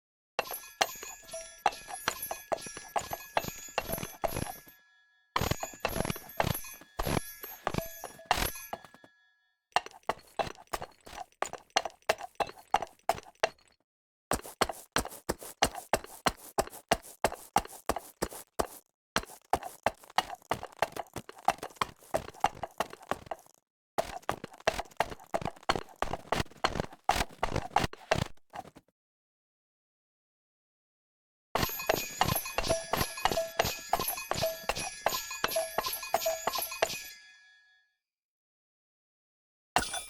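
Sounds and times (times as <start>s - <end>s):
hooves trotting on hard surface: 5.4s - 9.0s, 9.8s - 13.7s, 14.3s - 28.8s, 31.6s - 37.0s.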